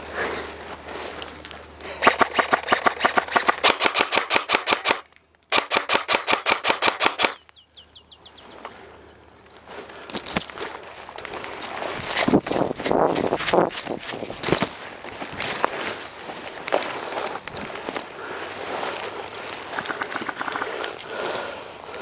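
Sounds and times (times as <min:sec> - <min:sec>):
airsoft gun firing full-auto: 0:02.0 - 0:07.4.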